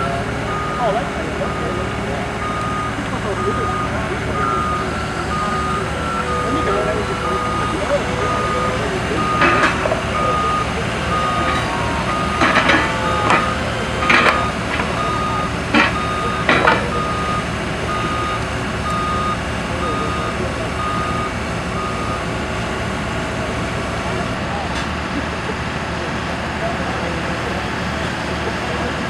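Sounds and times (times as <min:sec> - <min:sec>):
backup alarm beeping: 0:00.0 - 0:22.3
machine engine running: 0:00.0 - 0:24.7
sharp knocks and clanks: 0:09.2 - 0:10.3, 0:11.0 - 0:17.1.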